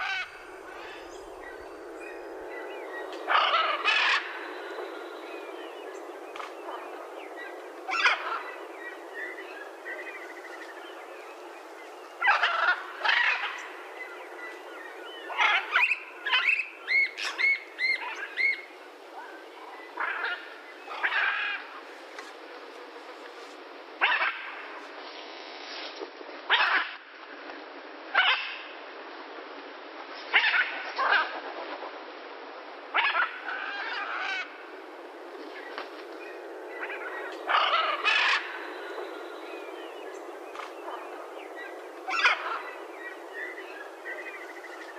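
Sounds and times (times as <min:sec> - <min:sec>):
steady background hiss: 0:00.0 - 0:44.9
macaws squawking: 0:12.2 - 0:13.7, 0:36.8 - 0:39.0, 0:40.6 - 0:43.6.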